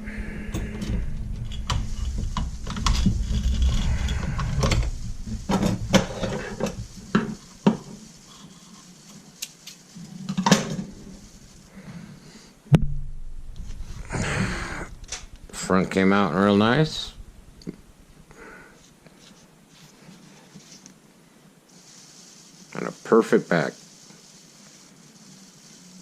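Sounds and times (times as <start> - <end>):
low rumble: 0.0 - 7.1, 12.7 - 18.6
sharp clicks and knocks: 0.5 - 8.0.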